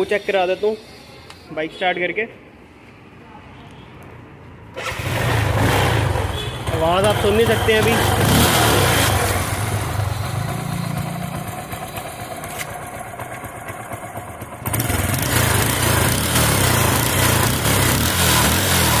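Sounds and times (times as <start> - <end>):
motorcycle engine idling: 9.1 - 18.0.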